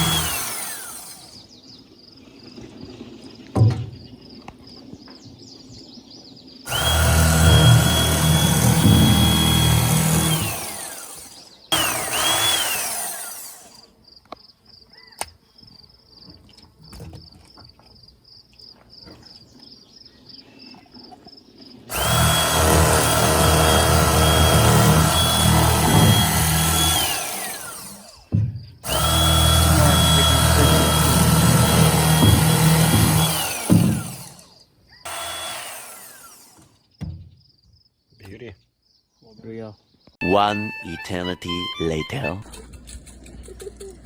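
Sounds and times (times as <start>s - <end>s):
electric motor tool whining: 0.0s - 1.4s, 6.7s - 13.9s, 21.9s - 36.8s.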